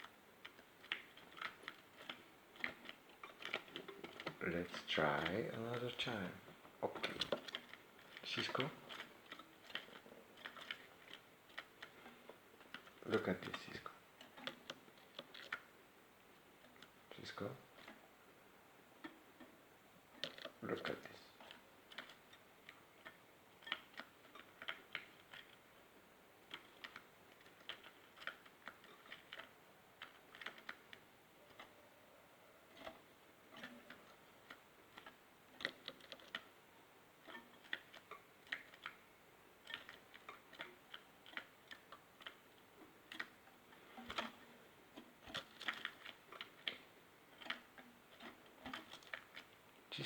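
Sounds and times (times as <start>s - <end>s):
bird moving in cage clicks: 0.4s - 4.4s, 20.1s - 20.6s, 26.5s - 31.8s, 32.7s - 36.5s, 43.0s - 49.6s.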